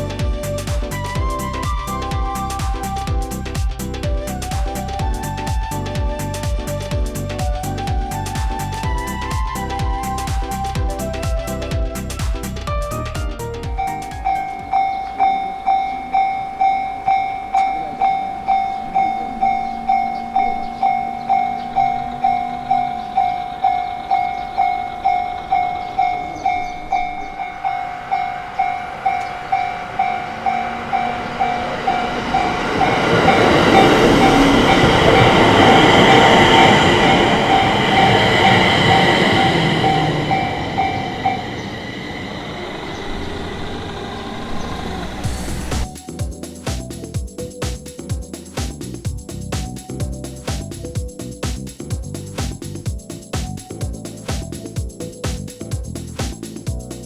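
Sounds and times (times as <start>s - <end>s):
train rushing past: 0.0s - 46.2s
level crossing warning bell: 13.8s - 46.1s.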